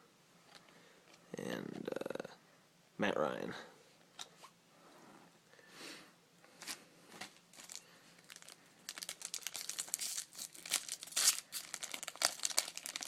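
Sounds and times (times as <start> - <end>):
wrapper crinkling and tearing: 7.5 - 13.0.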